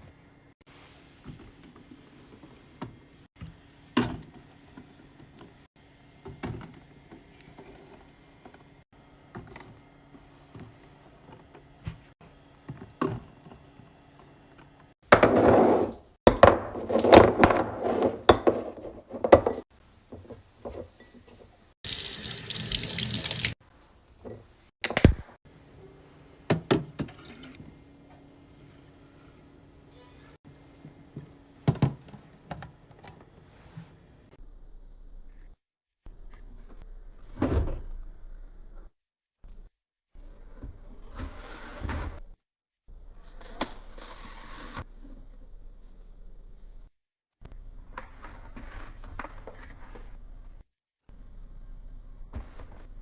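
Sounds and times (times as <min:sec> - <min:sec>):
running or splashing water: 0:21.8 - 0:23.6.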